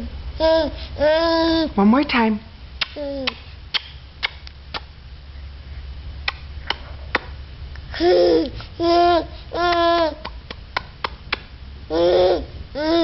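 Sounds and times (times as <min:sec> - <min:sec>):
baby smacking lips: 0:02.8 - 0:04.9, 0:06.2 - 0:08.7, 0:09.7 - 0:11.5
baby vocalizing: 0:07.9 - 0:10.4, 0:11.9 - 0:13.0.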